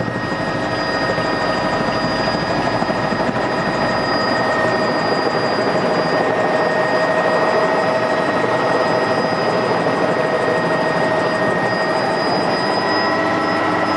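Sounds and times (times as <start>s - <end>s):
helicopter engine and rotor noise: 0.0s - 13.9s
steady high whine: 0.0s - 13.9s.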